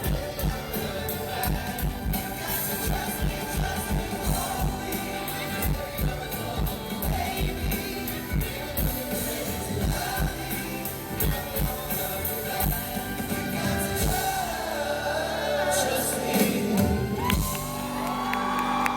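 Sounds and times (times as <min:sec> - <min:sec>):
drums and bass: 0:00.0 - 0:18.9
male singers: 0:00.0 - 0:18.9.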